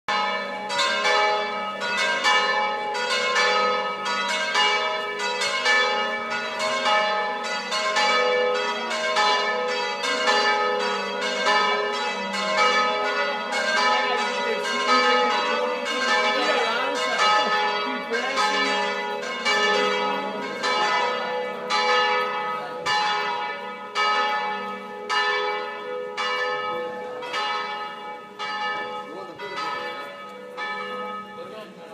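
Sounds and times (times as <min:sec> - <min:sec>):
church bells pealing: 0:00.1 - 0:31.9.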